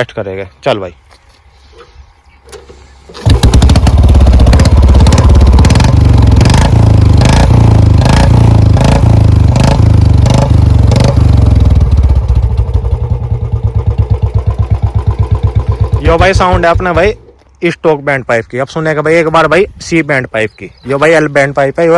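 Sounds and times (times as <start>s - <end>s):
exhaust cracks: 2.5s - 17.5s
motorcycle engine revving: 2.6s - 17.3s.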